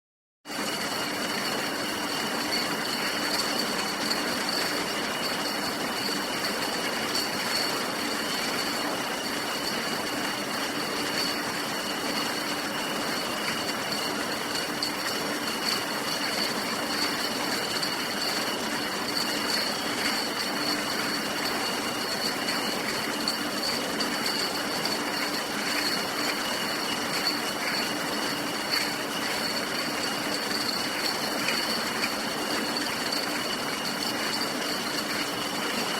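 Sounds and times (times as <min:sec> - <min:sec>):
glass bottles clattering: 0:01.5 - 0:07.7, 0:13.5 - 0:35.9.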